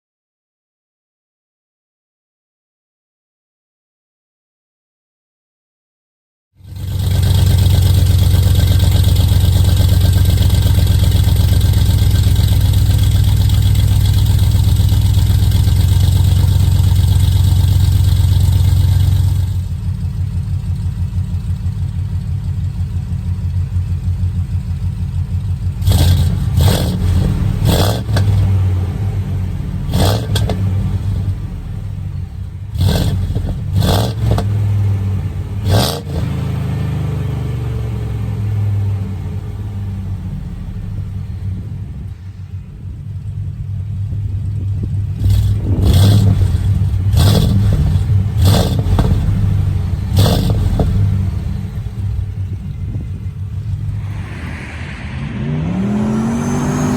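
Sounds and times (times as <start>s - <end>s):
engine revving: 6.6s - 19.7s, 25.8s - 42.1s, 45.1s - 53.0s, 53.9s - 56.9s
truck engine running: 6.8s - 35.6s.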